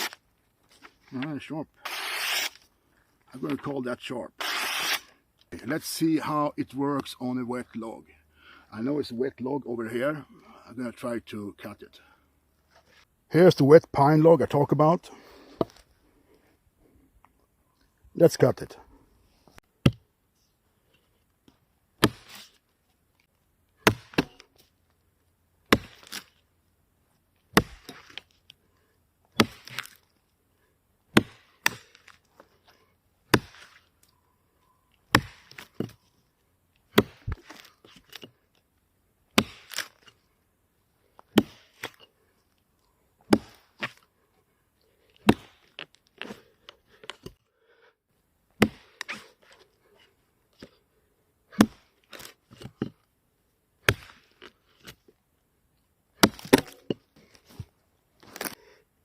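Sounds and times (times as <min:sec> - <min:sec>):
axe chopping into log: 0:22.0 - 0:22.5, 0:23.8 - 0:24.4, 0:25.7 - 0:26.3, 0:27.5 - 0:28.2, 0:29.4 - 0:30.0, 0:31.1 - 0:32.0, 0:33.3 - 0:33.8, 0:35.1 - 0:36.0, 0:36.9 - 0:37.7, 0:39.4 - 0:40.0, 0:41.3 - 0:42.0, 0:43.3 - 0:44.0, 0:45.2 - 0:45.6, 0:48.6 - 0:49.2, 0:51.6 - 0:53.0, 0:53.8 - 0:54.3, 0:56.2 - 0:57.0.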